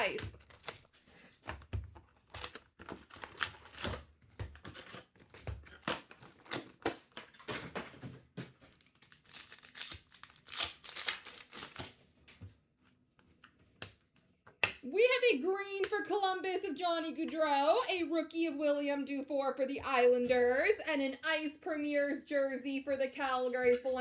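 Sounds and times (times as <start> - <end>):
plastic wrapping tearing and crinkling: 0.0 - 7.7, 8.6 - 12.2.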